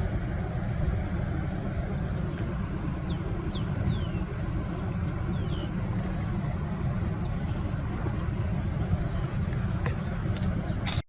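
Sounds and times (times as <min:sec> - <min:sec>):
steady low rumble: 0:00.0 - 0:11.0
bird chirps: 0:02.1 - 0:08.0, 0:09.9 - 0:11.0.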